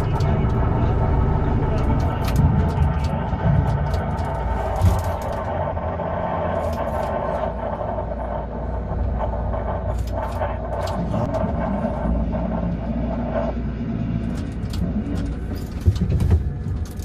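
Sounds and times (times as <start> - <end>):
constant hum: 0.0 - 17.0
low rumble in crane cab: 0.0 - 17.0.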